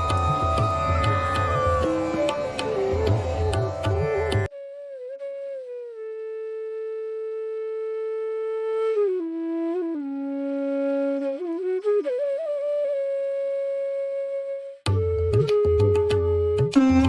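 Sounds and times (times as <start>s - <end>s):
solo flute long notes: 0.0s - 17.0s.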